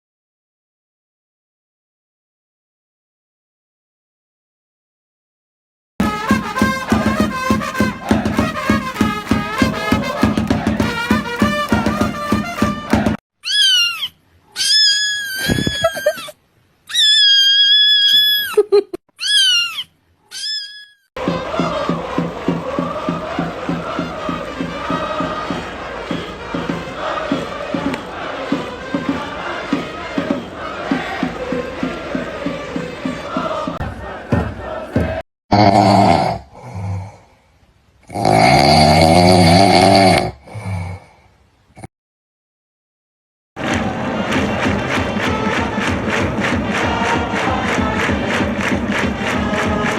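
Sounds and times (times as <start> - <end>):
music with chanting crowd: 6.0 - 13.2, 21.2 - 35.2, 43.6 - 49.9
cat meowing: 13.4 - 16.3, 16.9 - 18.5, 19.2 - 21.0.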